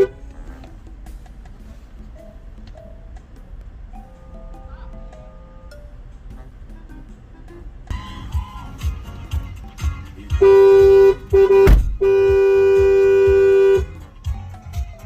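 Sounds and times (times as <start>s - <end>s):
car horn honking: 0.0s - 0.7s, 4.0s - 14.4s
background music with steady beat: 0.0s - 15.0s
sharp thump: 11.6s - 12.1s.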